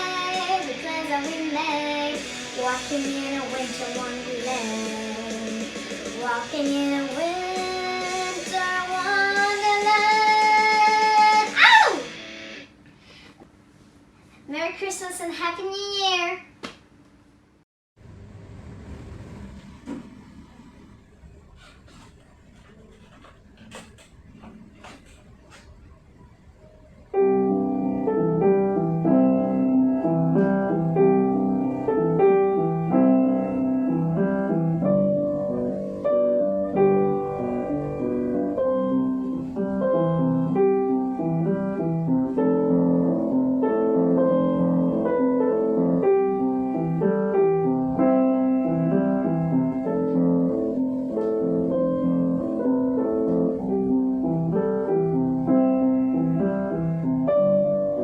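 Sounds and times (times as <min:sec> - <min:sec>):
piano playing notes and chords: 0:00.0 - 0:12.5, 0:27.0 - 0:58.0.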